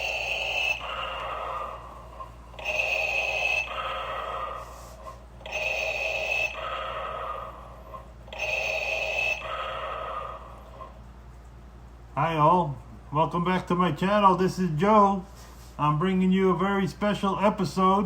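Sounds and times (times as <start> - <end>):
mechanical respirator breathing: 0.0 - 11.1.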